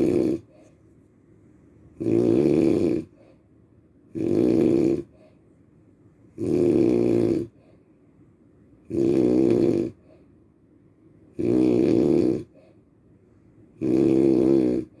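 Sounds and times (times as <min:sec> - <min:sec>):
loud snoring: 0:00.0 - 0:00.5, 0:02.0 - 0:03.2, 0:04.1 - 0:05.2, 0:06.4 - 0:07.6, 0:08.9 - 0:10.0, 0:11.4 - 0:12.6, 0:13.8 - 0:15.0.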